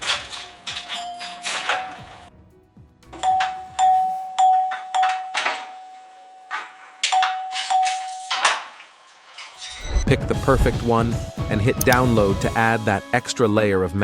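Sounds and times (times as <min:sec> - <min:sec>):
steady ringing tone: 0:00.6 - 0:02.3.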